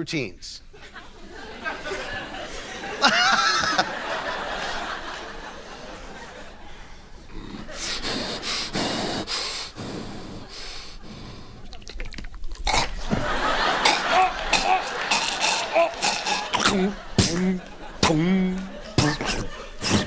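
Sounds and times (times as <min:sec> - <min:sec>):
man making mouth sound effects: 0:11.6 - 0:13.1, 0:13.8 - 0:20.0.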